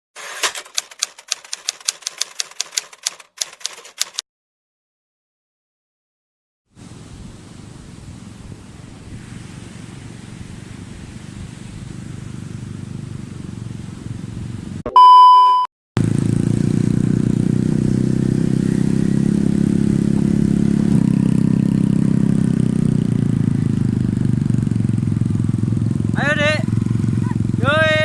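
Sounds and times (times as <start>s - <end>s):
wind or surf noise: 6.7s - 14.8s, 17.7s - 28.0s
loud pure beep: 14.9s - 15.7s
engine running loudly: 16.0s - 28.0s.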